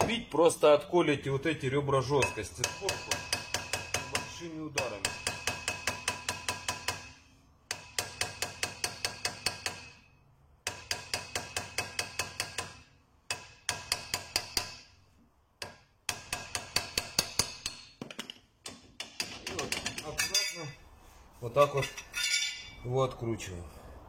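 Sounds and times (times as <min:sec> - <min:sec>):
hammer tapping metal brake drum: 0:02.2 - 0:10.0, 0:10.6 - 0:14.8.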